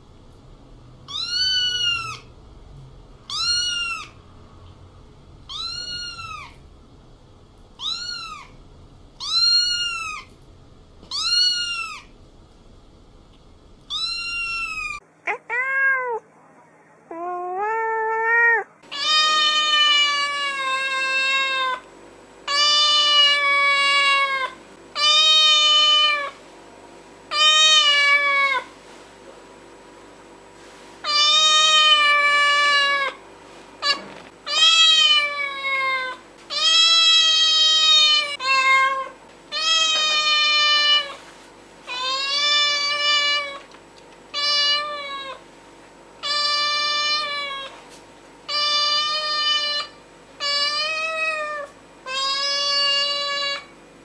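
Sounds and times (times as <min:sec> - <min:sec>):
cat meowing: 0:01.1 - 0:02.3, 0:03.3 - 0:04.2, 0:05.5 - 0:06.6, 0:07.8 - 0:08.6, 0:09.2 - 0:10.3, 0:11.1 - 0:12.1, 0:13.9 - 0:16.2, 0:17.1 - 0:21.8, 0:31.0 - 0:33.2, 0:33.8 - 0:41.2, 0:41.9 - 0:43.7, 0:44.3 - 0:45.4, 0:46.2 - 0:47.8, 0:48.5 - 0:53.7.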